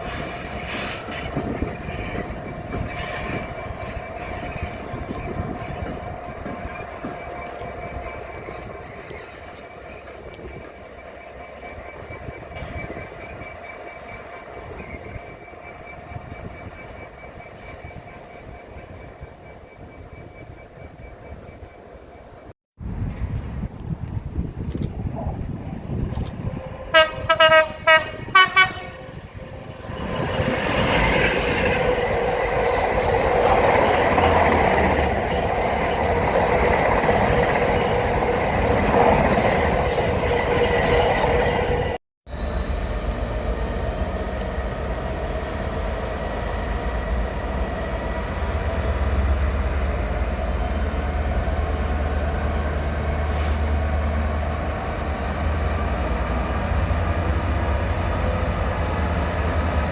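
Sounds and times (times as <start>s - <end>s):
train rushing and rumbling: 0.0s - 59.9s
train whine: 0.0s - 59.9s
train horn blasts: 26.3s - 30.0s.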